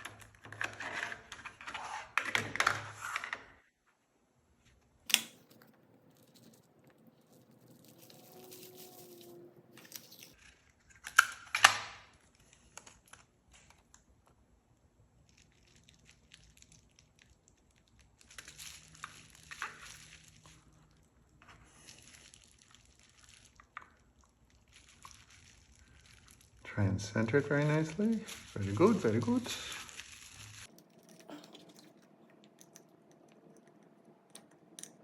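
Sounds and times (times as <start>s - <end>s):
tape backing paper crinkling: 5.1s - 14.0s, 15.2s - 33.6s.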